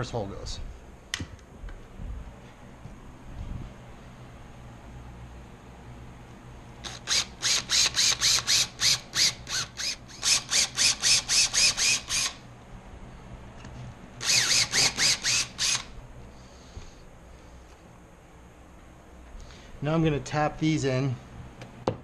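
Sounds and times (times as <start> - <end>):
power drill whining in pulses: 6.8 - 12.5, 14.2 - 16.0.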